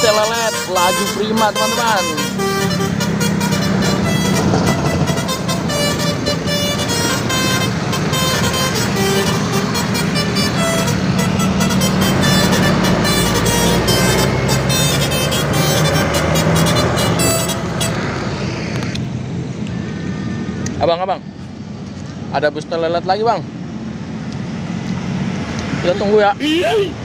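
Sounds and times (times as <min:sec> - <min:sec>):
short horn toots: 0:00.0 - 0:18.1
diesel bus engine droning: 0:00.0 - 0:27.0.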